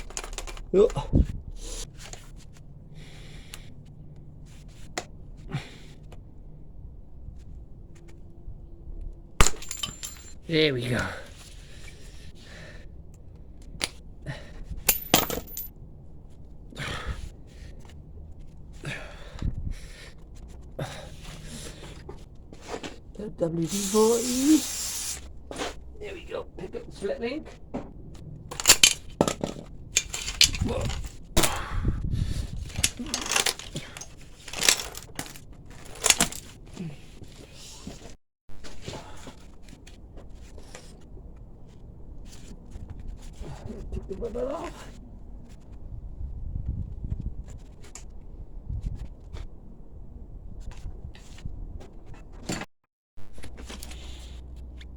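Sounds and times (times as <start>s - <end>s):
metallic tool clinks and taps: 9.4s - 10.4s, 14.9s - 15.7s
hand tools clicking on metal chain: 9.4s - 10.5s, 14.9s - 15.7s, 28.5s - 29.0s, 30.0s - 31.1s, 32.8s - 36.4s.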